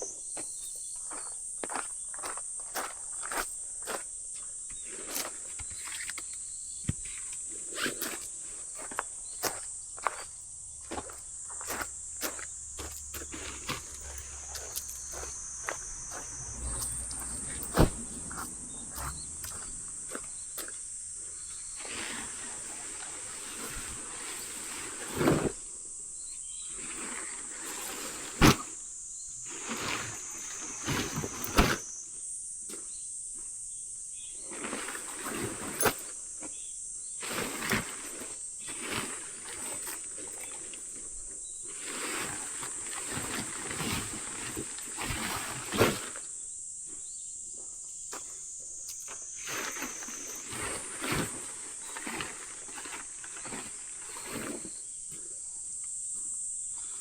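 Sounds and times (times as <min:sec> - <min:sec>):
rustling: 0:04.9 - 0:25.7
high-pitched insect chirring: 0:08.8 - 0:21.8.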